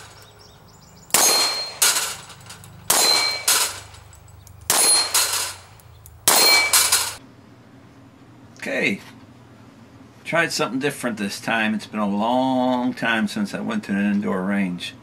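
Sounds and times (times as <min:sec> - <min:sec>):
metallic clangs ringing like a bell: 0:01.1 - 0:05.6.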